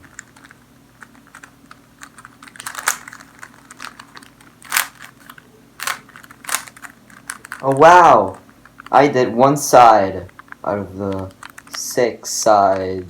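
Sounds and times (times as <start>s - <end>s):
plastic puzzle cube clicking: 0.0s - 7.8s, 10.3s - 11.8s.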